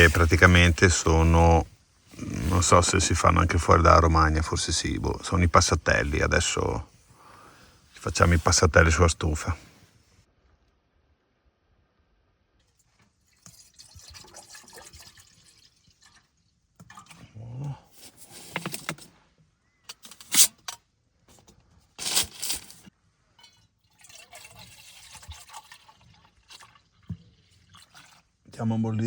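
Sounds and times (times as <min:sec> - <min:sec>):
liquid pouring into a pot: 0:12.6 - 0:17.2, 0:23.3 - 0:28.5.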